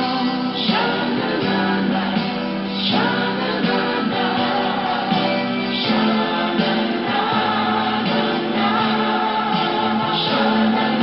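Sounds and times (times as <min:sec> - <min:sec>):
pop song with group vocals: 0:00.0 - 0:11.0.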